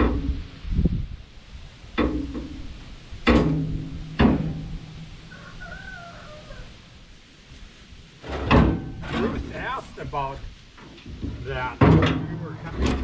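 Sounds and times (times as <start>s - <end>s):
loud ringing knocks: 3.2s - 5.0s
distant rooster crowing: 4.8s - 7.0s.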